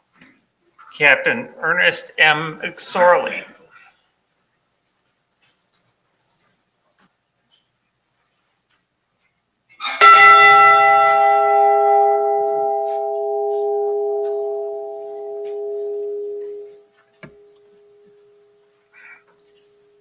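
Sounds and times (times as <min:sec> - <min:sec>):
ship's bell ringing: 0:09.9 - 0:16.8.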